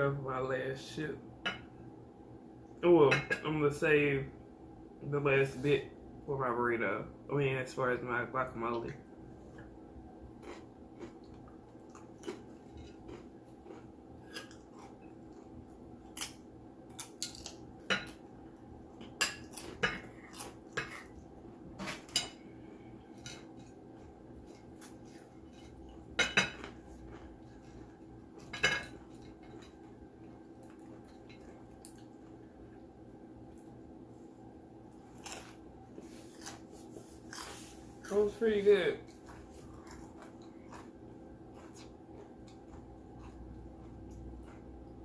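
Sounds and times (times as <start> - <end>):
faint steady hum: 0.0 - 45.0
cutlery clinking against dishes: 28.5 - 29.8.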